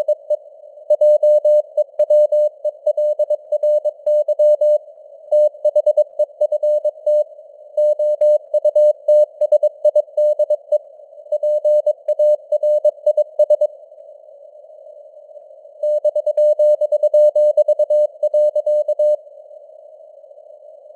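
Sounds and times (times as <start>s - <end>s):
morse code beeps: 0.0s - 4.8s, 5.4s - 7.2s, 7.8s - 10.8s, 11.4s - 13.7s, 15.8s - 19.2s.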